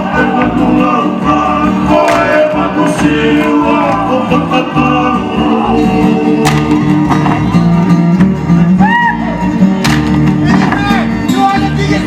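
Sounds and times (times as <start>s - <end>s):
group singing over a steady beat: 0.0s - 7.4s.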